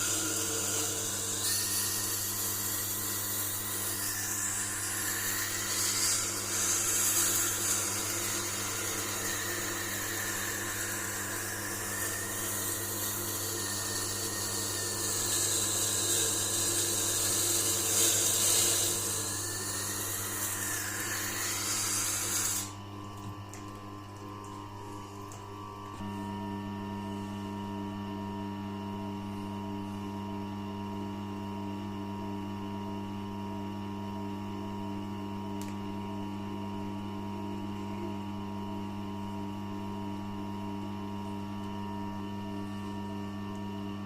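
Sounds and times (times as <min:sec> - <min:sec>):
knife blade grinding on stone: 0:00.0 - 0:22.7
sharpener motor hum: 0:00.0 - 0:23.2.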